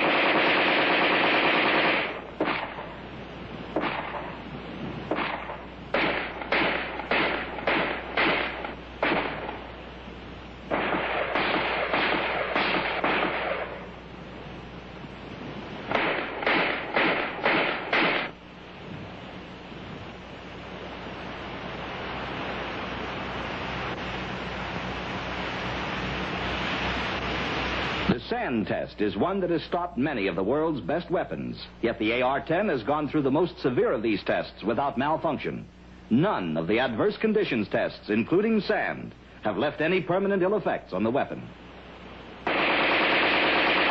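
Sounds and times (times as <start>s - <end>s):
rifle gunshots: 0.0s - 3.0s, 3.7s - 4.4s, 5.0s - 9.7s, 10.7s - 13.9s, 15.9s - 18.4s, 42.4s - 43.9s
steady hiss: 0.0s - 43.9s.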